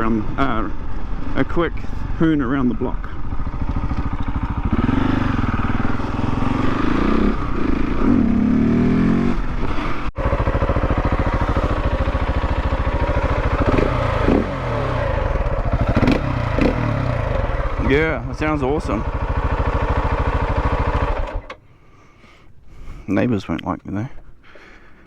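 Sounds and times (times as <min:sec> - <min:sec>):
single-cylinder motorcycle engine revving: 0:03.2 - 0:21.6.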